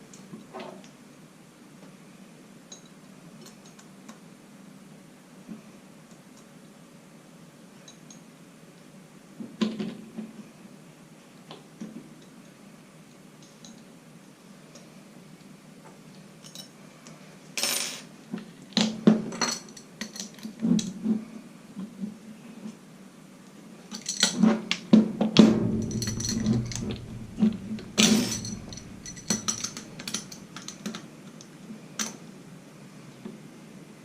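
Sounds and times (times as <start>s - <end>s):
metal parts clinking: 25.8s - 31.0s.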